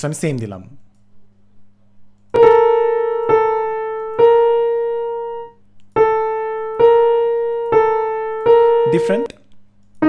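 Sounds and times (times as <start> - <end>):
piano notes: 2.4 - 9.4.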